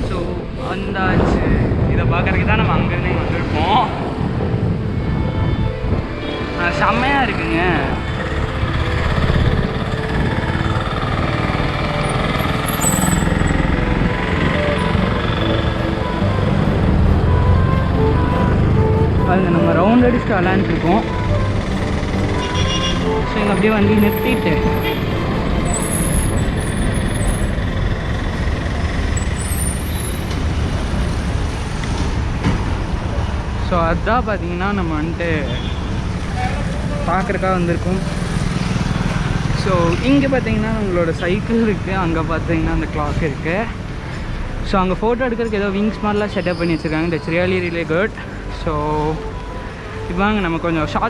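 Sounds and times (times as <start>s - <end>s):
wind buffeting microphone: 0.0s - 6.2s
road traffic: 0.0s - 51.0s.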